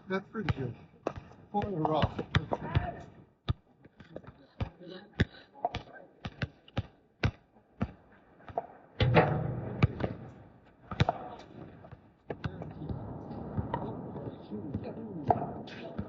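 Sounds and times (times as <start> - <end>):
basketball bouncing on hard court: 1.0 - 13.9.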